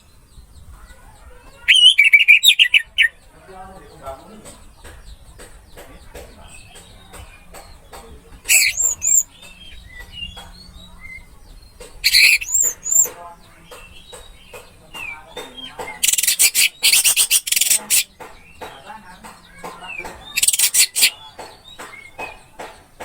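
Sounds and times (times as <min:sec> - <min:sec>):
bird chirps: 0:00.0 - 0:22.7
bird whistled phrases: 0:01.6 - 0:03.1.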